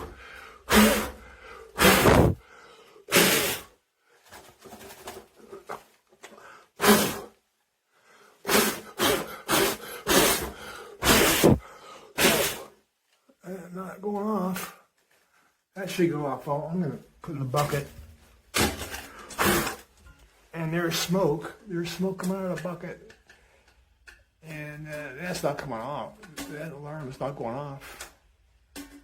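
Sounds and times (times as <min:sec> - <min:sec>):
person's sharp breaths: 0:00.0 - 0:03.0, 0:08.0 - 0:12.2.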